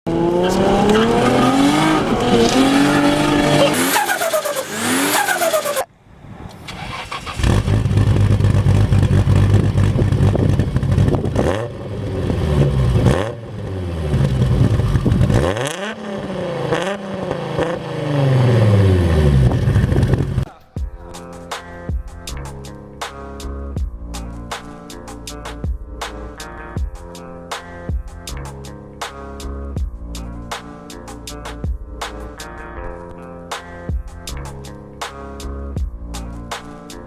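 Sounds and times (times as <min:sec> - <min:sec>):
car engine accelerating hard: 0:00.0 - 0:05.9, 0:06.8 - 0:20.5.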